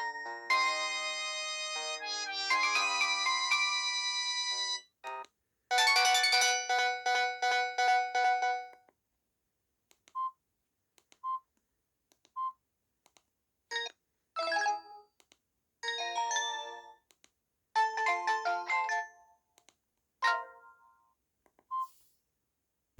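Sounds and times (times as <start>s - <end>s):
phone melody: 0.0s - 8.8s.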